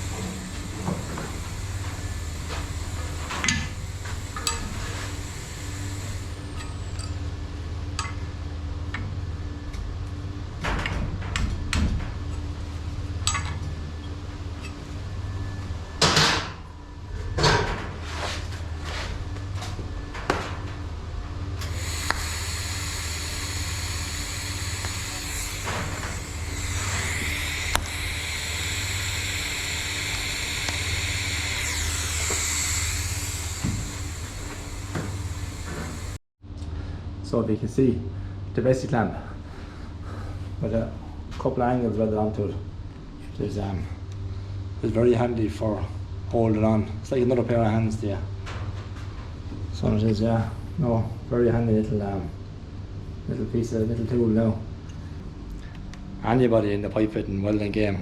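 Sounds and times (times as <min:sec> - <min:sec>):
high whine with hiss: 0:00.0 - 0:36.2
low machine hum: 0:00.0 - 0:58.0.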